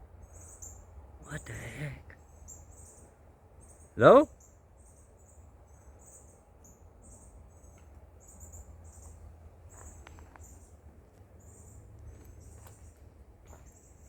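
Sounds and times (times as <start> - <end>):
insects chirping trills: 0.0 - 14.0.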